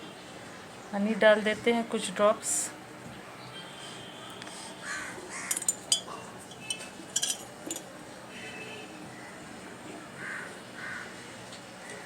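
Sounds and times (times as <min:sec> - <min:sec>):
spoon clinking against teacup: 0:05.5 - 0:07.9.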